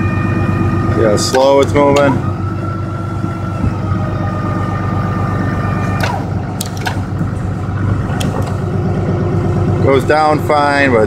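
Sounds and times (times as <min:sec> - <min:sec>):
diesel engine idling: 0:00.0 - 0:11.0
hydraulic unit whine: 0:00.0 - 0:11.0
sharp clicks: 0:06.0 - 0:07.1.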